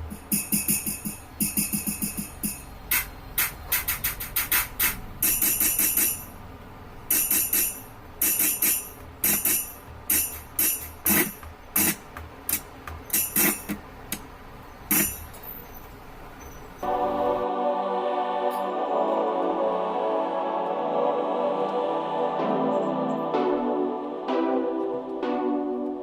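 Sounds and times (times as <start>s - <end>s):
jingly tambourine-like percussion: 0.0s - 6.4s, 7.1s - 11.4s, 13.1s - 13.8s, 14.9s - 15.4s.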